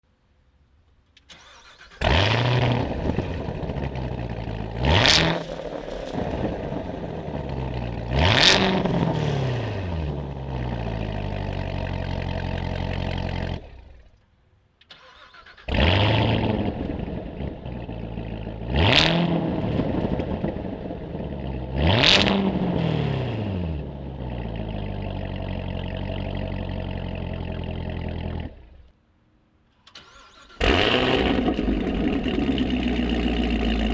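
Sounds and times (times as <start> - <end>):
car engine starting and revving: 1.3 - 14.2, 14.9 - 28.9, 29.9 - 33.9
car engine idling: 1.4 - 14.2, 15.7 - 18.7, 23.8 - 28.9, 30.1 - 33.9.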